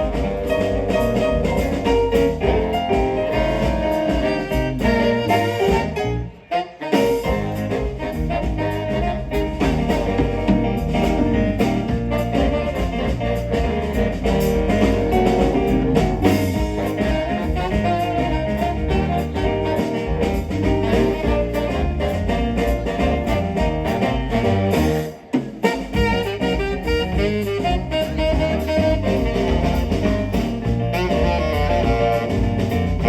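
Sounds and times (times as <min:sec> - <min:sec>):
jazzy guitar music: 0:00.0 - 0:33.0
steady drum beat: 0:00.0 - 0:33.0.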